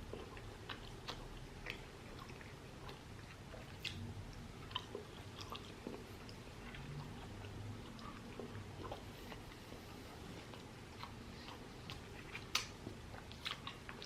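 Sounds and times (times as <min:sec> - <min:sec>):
person chewing food: 0:00.0 - 0:14.0.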